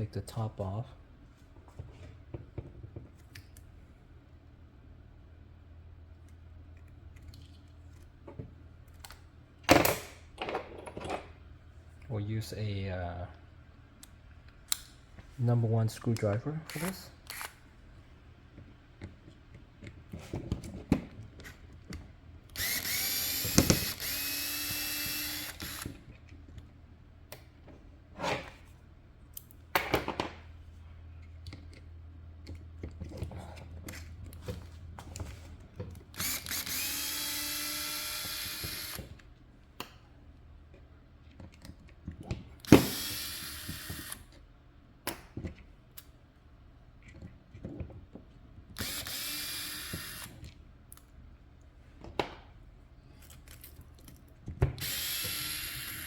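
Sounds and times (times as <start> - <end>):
screws and plastic parts clicking: 16.2 - 17.6, 21.4 - 26.7, 36.0 - 39.3, 41.3 - 44.4, 48.7 - 51.1, 53.2 - 56.0
electric screwdriver running: 22.6 - 26.0, 36.2 - 39.1, 42.6 - 44.2, 48.8 - 50.4, 54.8 - 56.0.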